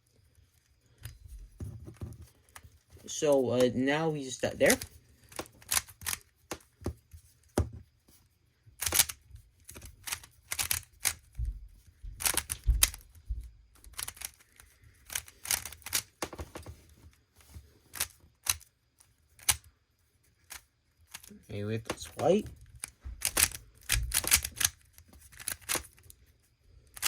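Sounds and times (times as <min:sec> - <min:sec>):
puzzle cube clicking: 0:04.5 - 0:06.8, 0:08.8 - 0:11.4, 0:12.2 - 0:13.1, 0:13.9 - 0:16.7, 0:17.9 - 0:18.7, 0:19.3 - 0:19.7, 0:20.4 - 0:26.2.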